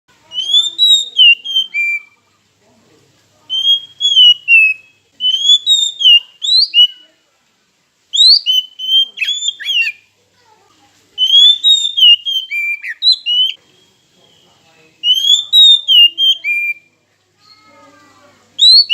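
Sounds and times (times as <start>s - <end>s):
bird singing whistled phrases: 0.2s - 2.2s, 3.5s - 7.2s, 8.1s - 10.1s, 11.2s - 17.0s, 18.6s - 18.9s.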